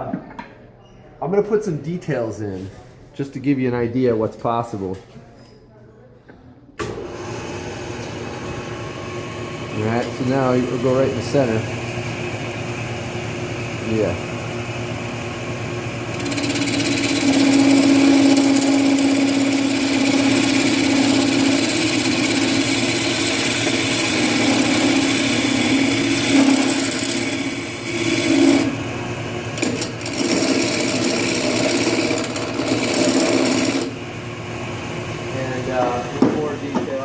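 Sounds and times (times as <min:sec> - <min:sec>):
lathe motor hum: 0:06.8 - 0:37.0
turning tool scraping wood: 0:09.7 - 0:11.7, 0:16.0 - 0:28.8, 0:29.4 - 0:34.0.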